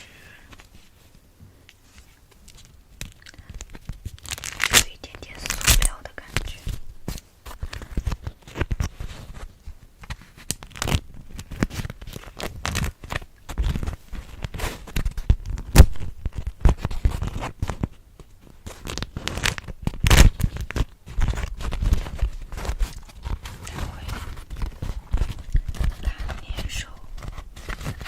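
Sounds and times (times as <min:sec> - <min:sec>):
cloth crinkling: 0:06.6 - 0:28.0.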